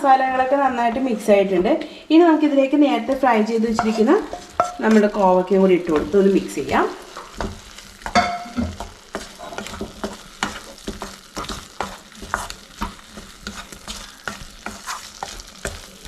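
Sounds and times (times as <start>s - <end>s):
low sizzle: 0.0s - 16.0s
spatula scraping a frying pan: 3.7s - 6.4s, 7.0s - 16.0s.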